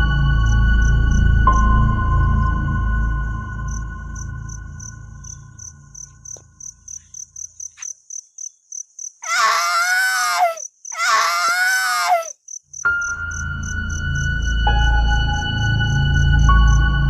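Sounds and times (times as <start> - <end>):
cricket trilling: 3.7 - 16.8
wailing cries: 9.2 - 12.4.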